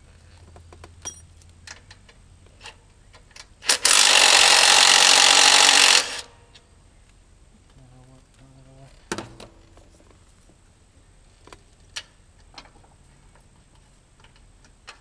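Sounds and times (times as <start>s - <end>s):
power tool running: 3.6s - 6.3s.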